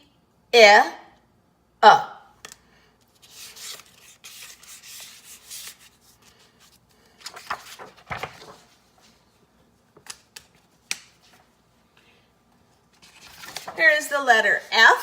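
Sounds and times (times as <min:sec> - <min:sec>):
rubbing and rustling handling noise: 0:03.0 - 0:15.0.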